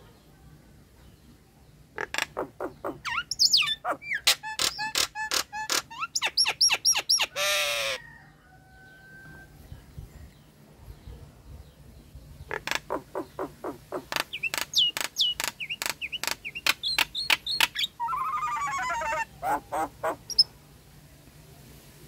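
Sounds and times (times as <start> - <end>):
myna calling with clicking notes: 2.0 - 8.0, 12.5 - 20.4.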